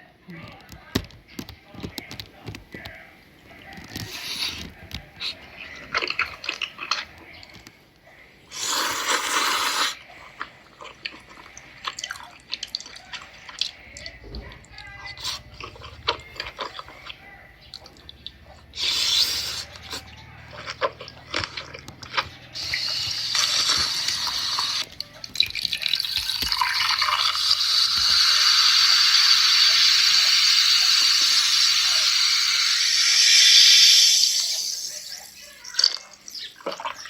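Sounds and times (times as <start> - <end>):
water running from tap: 25.4 - 37.0.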